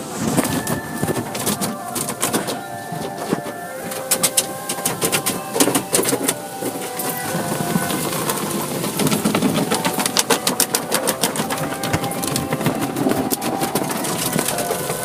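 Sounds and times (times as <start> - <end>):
car wash motor hum: 0.0 - 15.0
rapid slapping clicks: 3.3 - 15.0.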